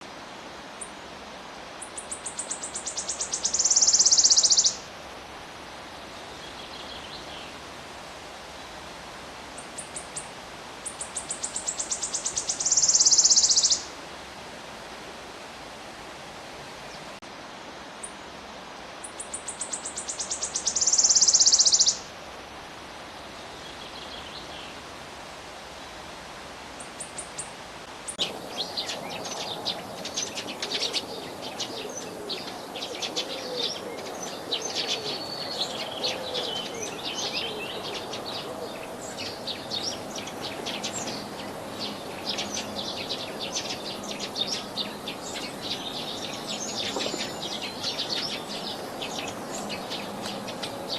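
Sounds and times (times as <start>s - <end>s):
sparrows chirping: 1.9s - 4.8s, 10.8s - 13.9s, 19.2s - 22.0s, 28.1s - 50.9s.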